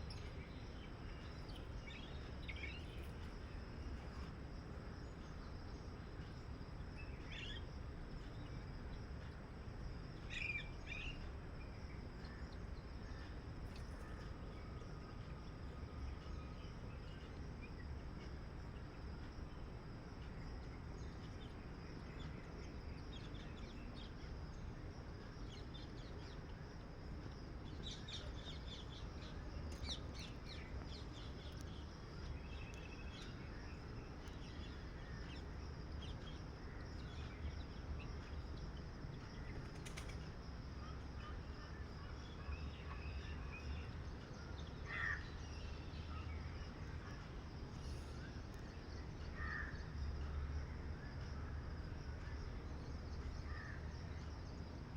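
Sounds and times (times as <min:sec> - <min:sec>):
crow cawing: 0:49.4 - 0:49.7.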